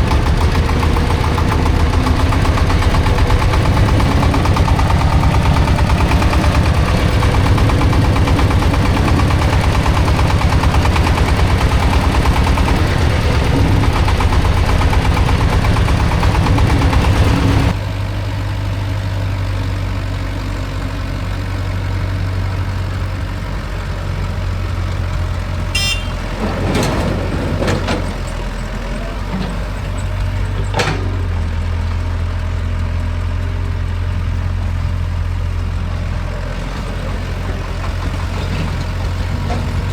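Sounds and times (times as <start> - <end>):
heavy machinery diesel engines: 0.0 - 39.9
brief high-pitched tone: 25.8 - 26.2.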